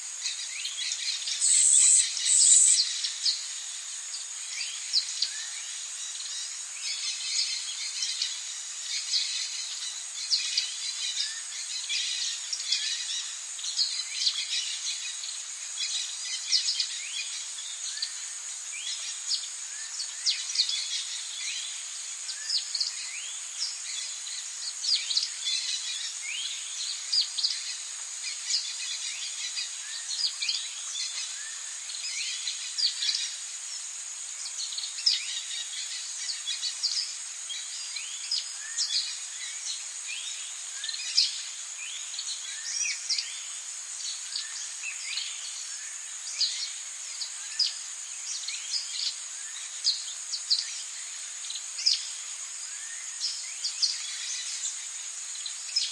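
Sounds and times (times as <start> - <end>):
high-pitched insect drone: 0.2 - 16.6
birds chirping: 0.4 - 3.5.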